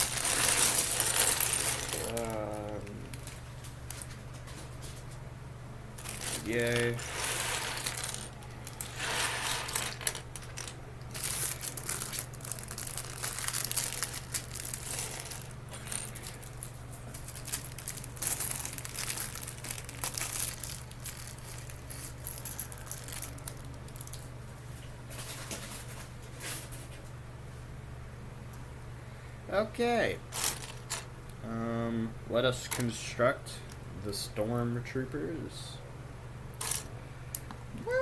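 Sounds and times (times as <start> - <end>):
plastic pieces clattering: 0.0 - 4.2, 6.0 - 24.2, 30.3 - 31.1, 36.6 - 36.9
plastic bag crinkling: 0.0 - 4.6, 6.0 - 24.3.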